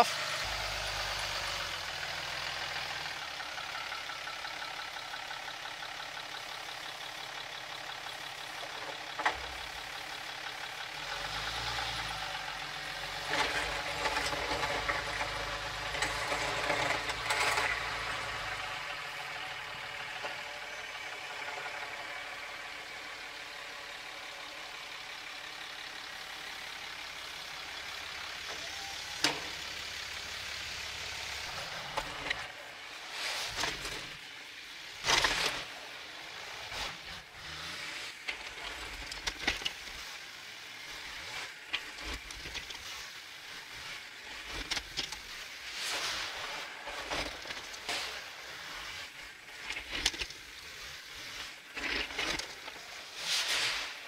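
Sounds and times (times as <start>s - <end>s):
diesel engine clattering: 0.0s - 34.2s.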